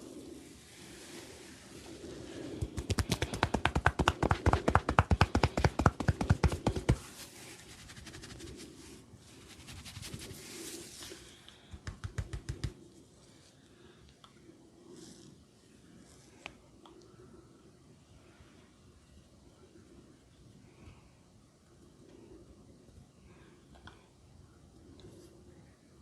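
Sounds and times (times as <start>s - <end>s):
hands tapping on a head: 2.6s - 7.1s, 11.6s - 12.8s.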